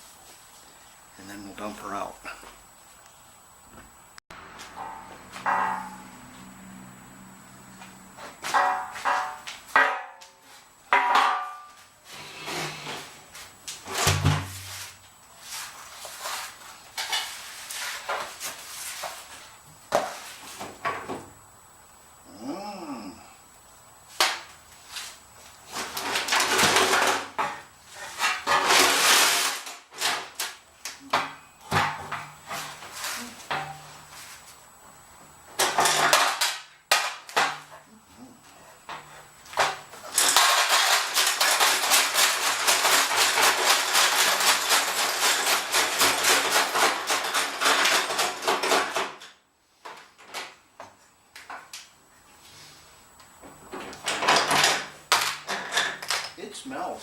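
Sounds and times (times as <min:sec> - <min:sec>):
nuts and bolts rattling in metal tank: 0:40.1 - 0:49.3.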